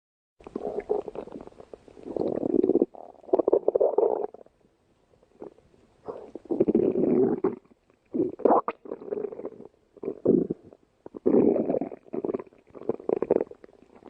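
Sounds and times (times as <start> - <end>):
stomach growling: 0.4 - 4.5, 5.4 - 14.0.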